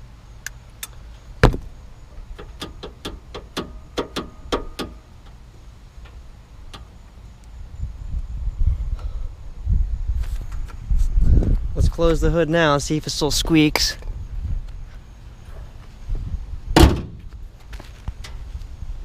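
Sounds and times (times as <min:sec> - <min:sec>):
sharp metallic clicks and taps: 0:02.4 - 0:05.4
wind rumble on microphone: 0:07.6 - 0:12.6, 0:13.2 - 0:15.0, 0:15.6 - 0:19.0.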